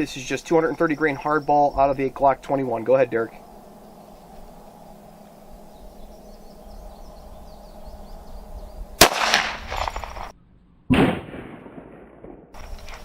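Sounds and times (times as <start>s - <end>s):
pistol shots: 9.0s - 10.3s, 10.9s - 12.6s.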